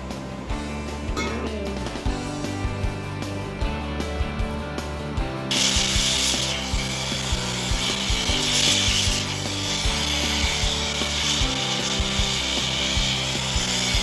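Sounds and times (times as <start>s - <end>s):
quiet background music: 0.0s - 14.0s
rasping rubbing by hand: 5.5s - 14.0s.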